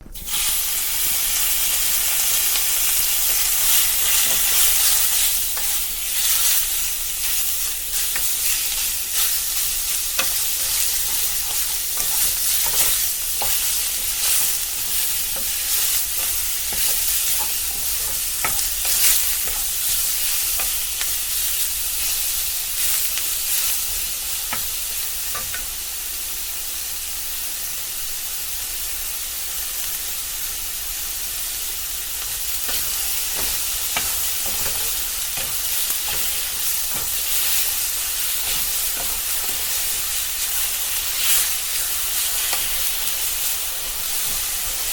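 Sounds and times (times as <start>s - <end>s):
food sizzling in a hot pan: 0.0s - 44.9s.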